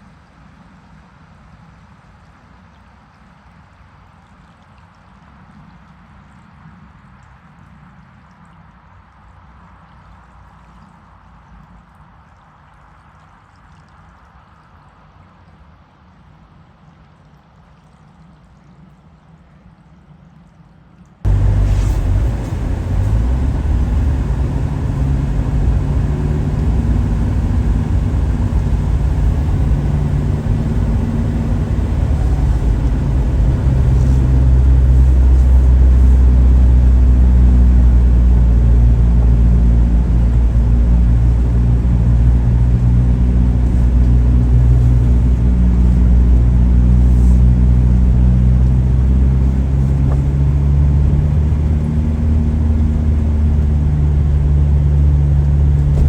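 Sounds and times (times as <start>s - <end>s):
vehicle engine droning: 21.3s - 56.0s.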